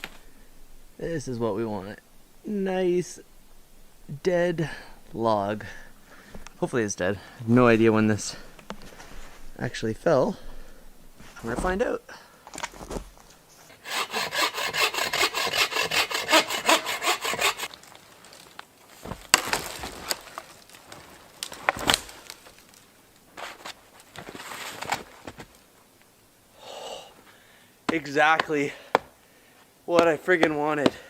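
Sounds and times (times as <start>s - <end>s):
hand saw cutting log: 13.7s - 17.7s.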